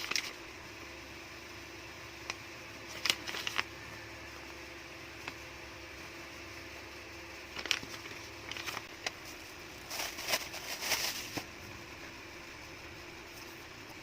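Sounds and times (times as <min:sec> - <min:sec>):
low room hum: 0:00.0 - 0:14.0
packaging rustling and crackling: 0:02.9 - 0:03.7, 0:07.5 - 0:11.5.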